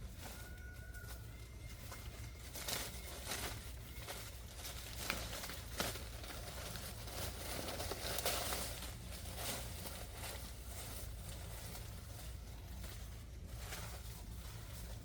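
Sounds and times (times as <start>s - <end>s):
rustling and crinkling: 0.0s - 15.0s.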